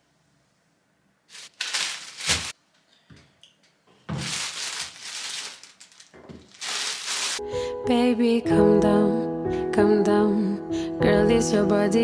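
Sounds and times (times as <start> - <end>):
hissing rustling noise: 1.3 - 2.5, 4.2 - 7.4.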